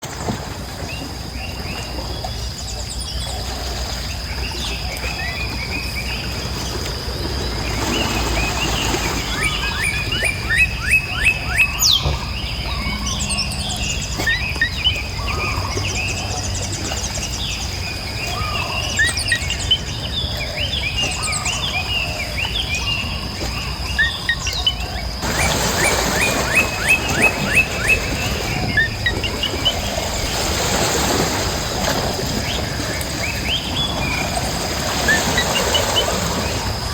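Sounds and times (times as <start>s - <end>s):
birds chirping and calling: 0.8s - 31.2s, 31.8s - 36.9s.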